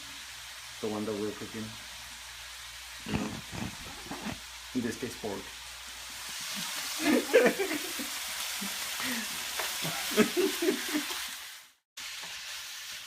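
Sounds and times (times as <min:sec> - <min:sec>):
meat sizzling in a pan: 0:00.0 - 0:13.0
stirring scrapes: 0:03.1 - 0:04.4.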